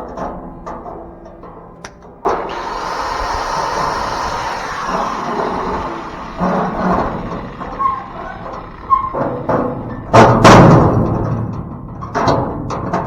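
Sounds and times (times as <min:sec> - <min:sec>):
metal bangs: 0:04.2 - 0:11.7
metal squeaks: 0:04.8 - 0:10.4.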